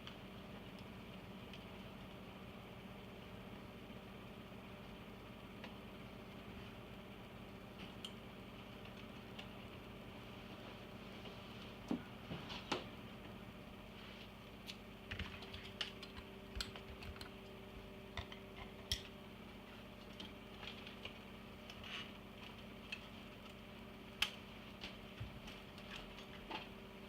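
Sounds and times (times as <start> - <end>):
clicks and taps on computer parts: 15.1 - 17.4, 18.1 - 19.1.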